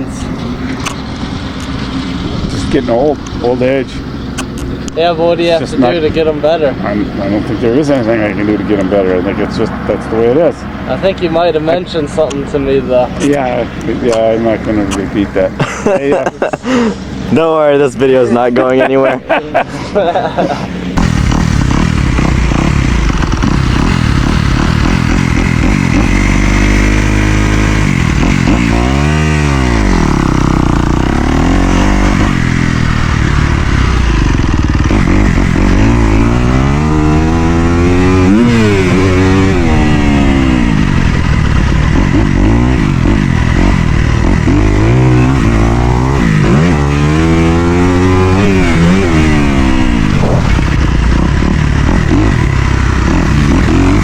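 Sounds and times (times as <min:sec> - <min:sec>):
dirt bike engine revving: 0:20.2 - 0:54.0.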